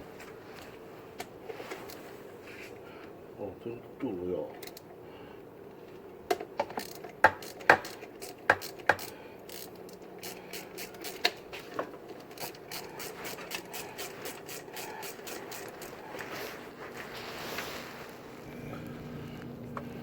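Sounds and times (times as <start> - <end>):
ratchet wrench clicking: 4.6 - 4.8, 6.6 - 11.4, 12.2 - 16.0.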